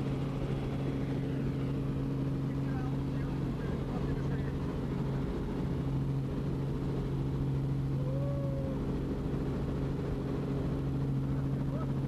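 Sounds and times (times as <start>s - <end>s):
helicopter engine and rotor drone: 0.0s - 12.0s.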